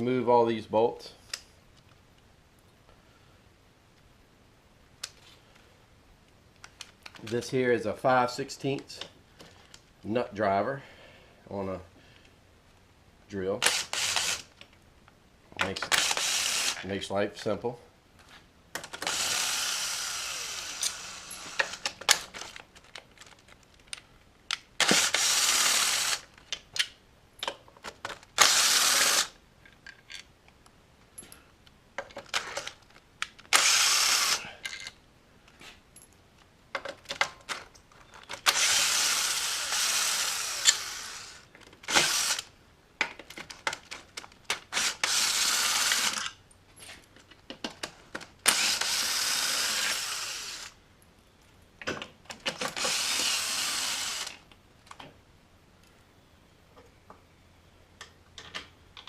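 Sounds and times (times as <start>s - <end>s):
drill running in short bursts: 15.9s - 16.8s, 19.0s - 21.8s, 24.8s - 26.2s, 28.4s - 29.3s, 33.5s - 34.5s, 38.5s - 42.5s, 44.7s - 46.2s, 48.5s - 50.7s, 52.7s - 54.4s.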